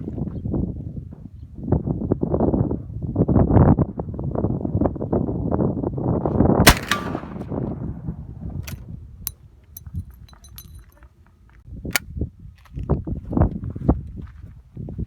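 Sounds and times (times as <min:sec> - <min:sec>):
rifle shots cracking: 0:06.6 - 0:08.0
light metallic clicks: 0:09.8 - 0:11.0.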